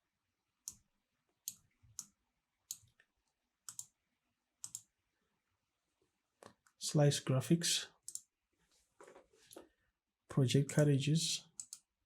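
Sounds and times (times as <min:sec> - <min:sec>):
computer mouse clicking: 0:01.4 - 0:03.1, 0:03.7 - 0:04.0, 0:04.6 - 0:04.9, 0:08.0 - 0:08.3, 0:11.6 - 0:11.9.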